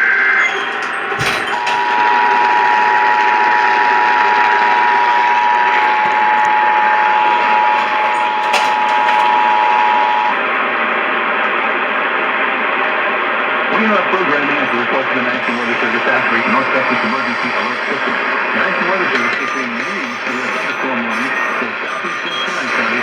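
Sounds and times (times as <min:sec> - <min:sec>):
screeching digital data tones: 0:00.0 - 0:03.1, 0:04.6 - 0:10.4, 0:13.8 - 0:23.0
two-tone alert signal: 0:00.4 - 0:02.2, 0:05.6 - 0:10.3, 0:15.2 - 0:23.0
radio static hiss: 0:13.5 - 0:23.0.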